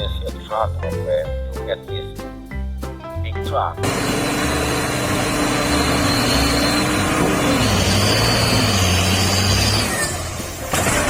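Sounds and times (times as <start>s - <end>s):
low background music: 0.0s - 11.0s
vehicle engine rushing: 3.5s - 11.0s.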